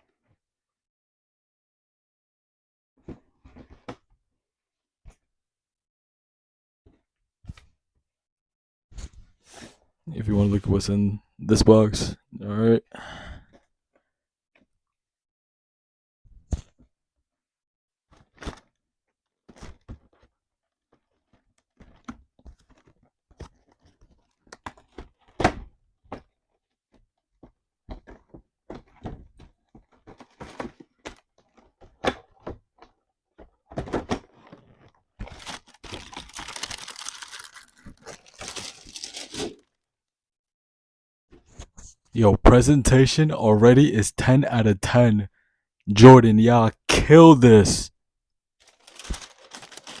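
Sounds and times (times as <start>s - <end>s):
packaging paper rustling: 20.9s - 25.4s, 34.2s - 39.6s, 48.6s - 50.0s.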